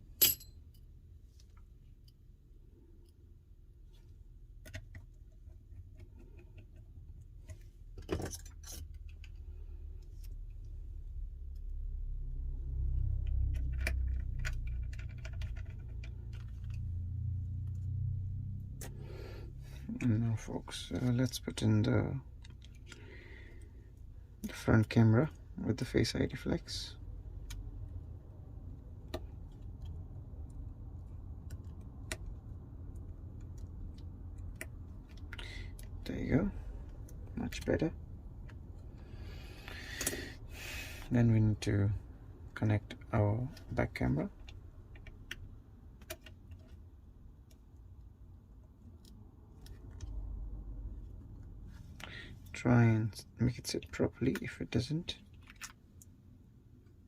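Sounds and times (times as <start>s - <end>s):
steady low hum: 0.0s - 57.0s
small clicks and taps of parts: 4.5s - 10.8s, 13.2s - 17.0s, 28.6s - 36.0s, 44.4s - 50.2s
low rumble: 9.7s - 21.8s.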